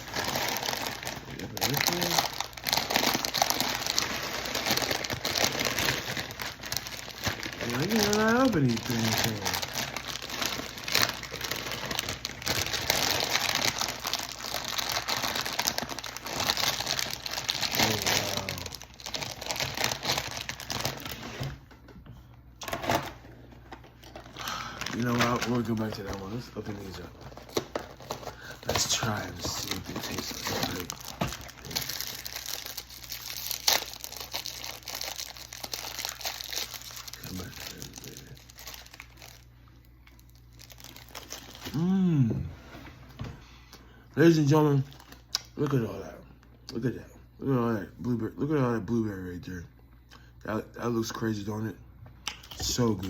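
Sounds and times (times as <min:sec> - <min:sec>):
foil wrapper crinkling: 0:00.0 - 0:21.5, 0:22.6 - 0:42.1.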